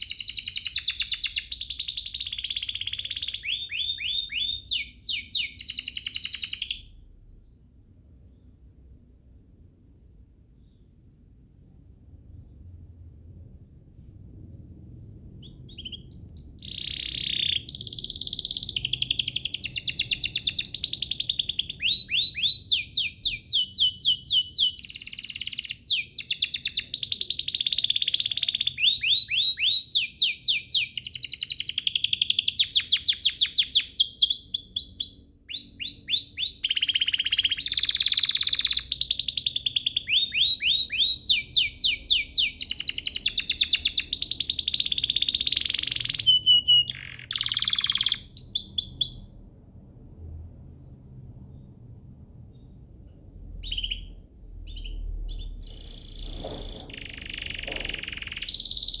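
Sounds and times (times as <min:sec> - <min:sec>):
canary singing trills: 0:00.0 - 0:07.6, 0:14.5 - 0:49.4, 0:53.6 - 0:59.0.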